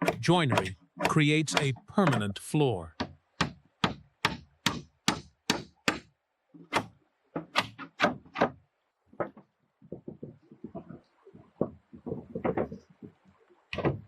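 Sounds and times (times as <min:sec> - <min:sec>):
wooden mallet knocking peg: 0:00.0 - 0:02.4, 0:03.0 - 0:06.1.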